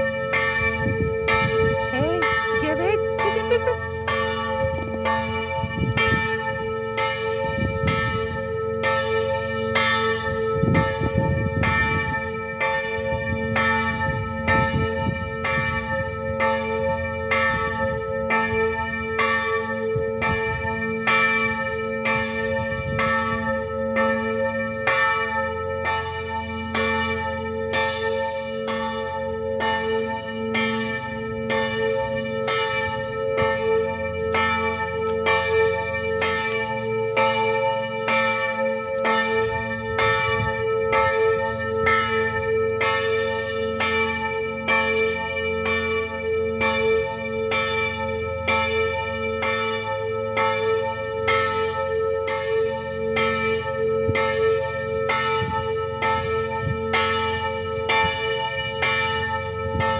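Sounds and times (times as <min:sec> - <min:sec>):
church bells ringing a peal: 0:00.0 - 0:59.9.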